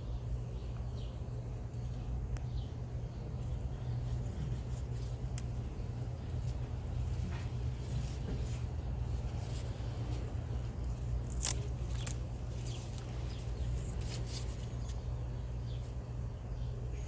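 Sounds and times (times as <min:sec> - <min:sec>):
steady low rumble: 0:00.0 - 0:17.0
leaves rustling: 0:03.4 - 0:16.2
plant stems snapping: 0:05.3 - 0:05.6, 0:10.5 - 0:15.0.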